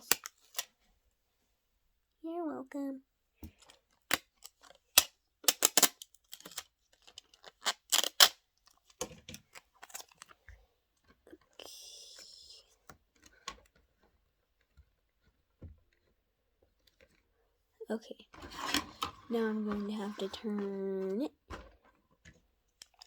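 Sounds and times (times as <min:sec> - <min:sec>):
sticky tape crackling and ripping: 0:04.1 - 0:08.4
tape screeching as it unrolls: 0:07.6 - 0:08.4.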